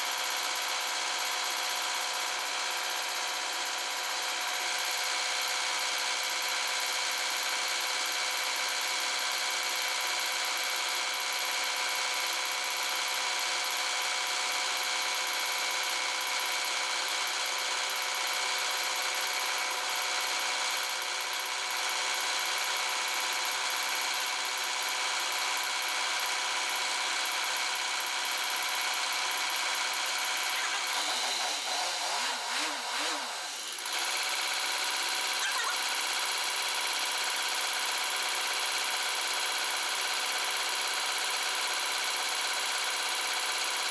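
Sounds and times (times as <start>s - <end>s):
engine chirping: 30.4s - 33.5s
wavering up-and-down sound: 30.5s - 31.7s.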